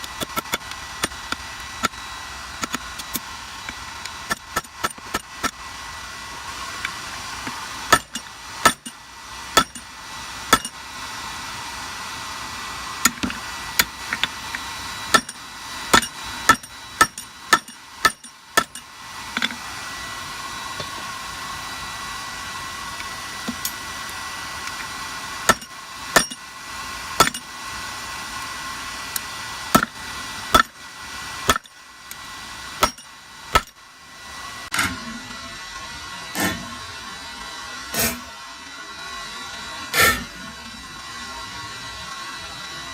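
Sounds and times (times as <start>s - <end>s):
hammer striking hot steel: 0.0s - 2.0s, 2.6s - 5.6s, 7.4s - 10.9s, 13.0s - 19.7s, 23.4s - 26.5s, 27.1s - 27.6s, 29.1s - 33.8s.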